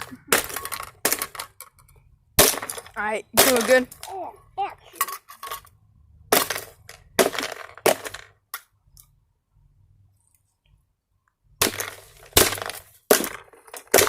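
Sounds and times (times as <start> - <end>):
hard blows cracking plastic casing: 11.6 - 14.0.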